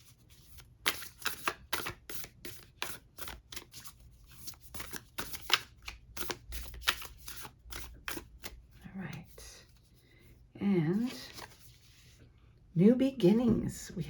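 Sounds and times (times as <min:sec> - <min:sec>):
cards being shuffled: 0:00.3 - 0:09.8, 0:11.1 - 0:12.1.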